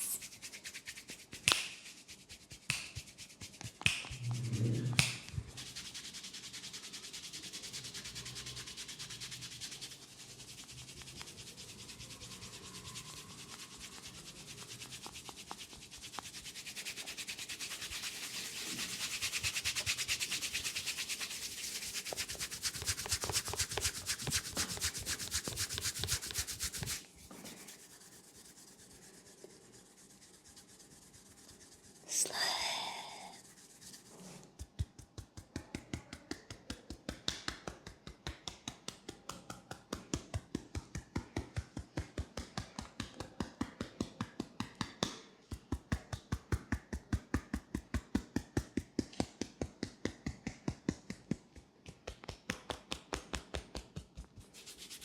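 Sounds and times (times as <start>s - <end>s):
hands rubbing hair and skin: 0.0s - 32.6s, 33.2s - 55.0s.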